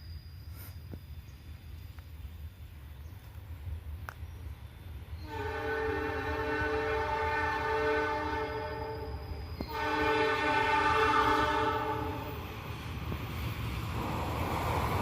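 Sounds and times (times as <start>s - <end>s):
locomotive horn blast: 5.2s - 12.4s.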